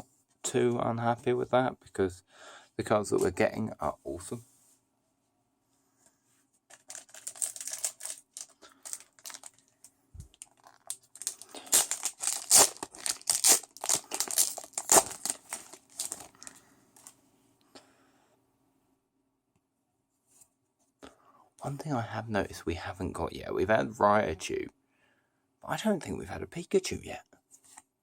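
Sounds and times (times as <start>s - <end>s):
cards and packaging rustling: 6.7s - 17.2s.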